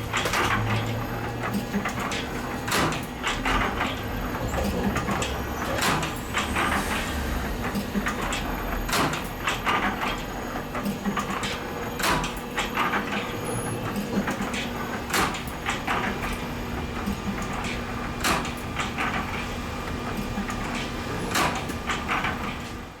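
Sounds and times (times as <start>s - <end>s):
machine humming: 2.4s - 10.7s.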